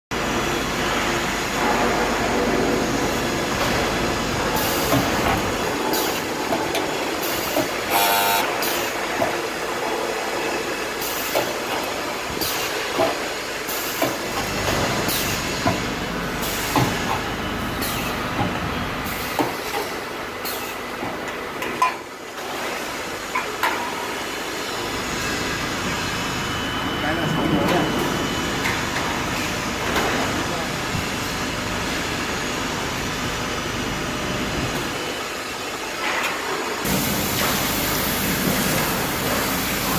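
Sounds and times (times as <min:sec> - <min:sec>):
welding machine hiss: 0:04.6 - 0:09.0, 0:36.8 - 0:39.9.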